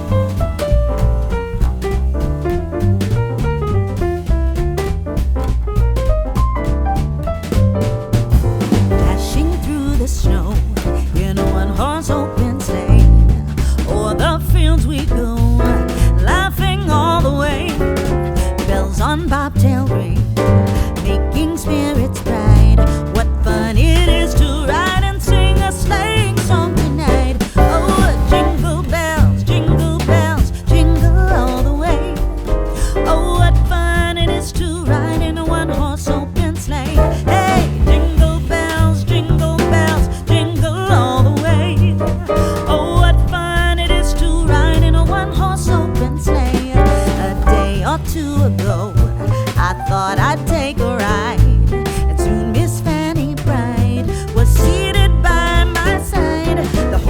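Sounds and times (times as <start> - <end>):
music with drums and bass: 0.0 - 57.0
song with singing voice: 20.8 - 57.0.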